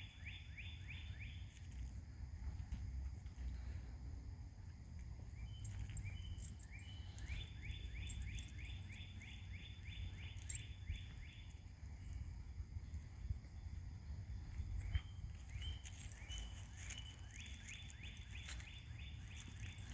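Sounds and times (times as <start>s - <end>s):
bird singing whistled notes: 0.0s - 1.6s, 5.3s - 11.7s, 14.7s - 19.9s
low steady rumble: 0.0s - 19.9s.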